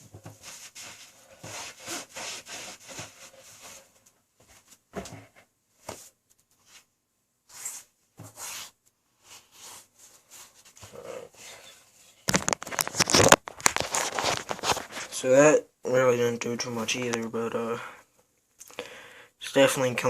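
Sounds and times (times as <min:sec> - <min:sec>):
toothbrush scrubbing a sneaker: 0:00.4 - 0:03.9.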